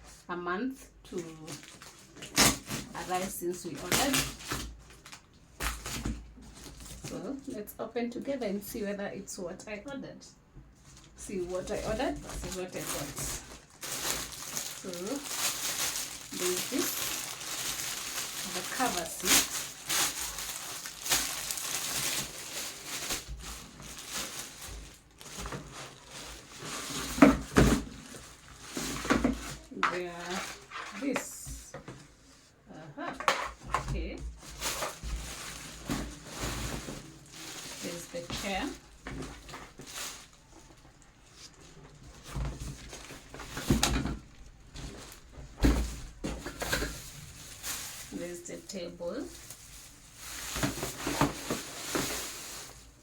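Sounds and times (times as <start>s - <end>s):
plastic packaging crinkling: 1.1s - 7.4s, 10.8s - 31.4s, 33.3s - 53.0s.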